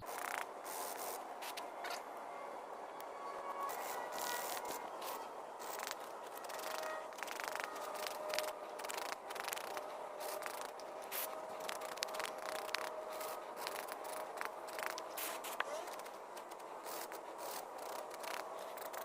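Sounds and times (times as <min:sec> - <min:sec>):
wire brush scraping metal: 0:03.5 - 0:19.0.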